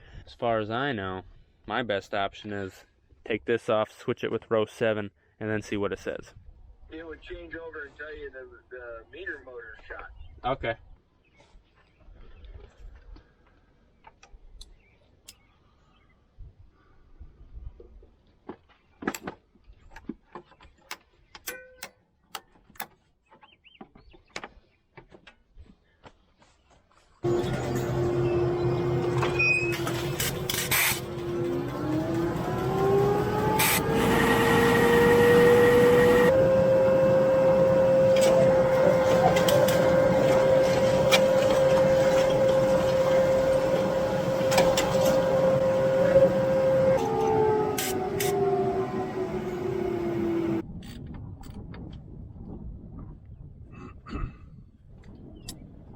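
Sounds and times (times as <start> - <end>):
farm machinery whining: 27.2 - 50.6.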